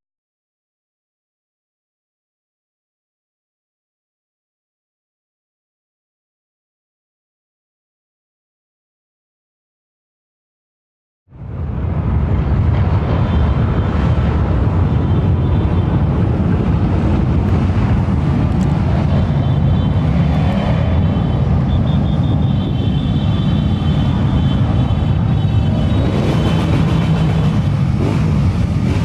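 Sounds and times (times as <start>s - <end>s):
many motorcycle engines rumbling: 11.3s - 29.0s.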